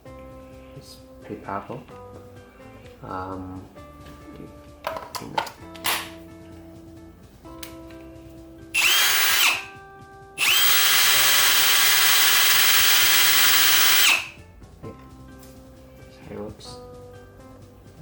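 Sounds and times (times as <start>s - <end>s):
quiet background music: 0.0s - 18.0s
hammer drill motor whine: 8.8s - 9.7s, 10.4s - 14.4s.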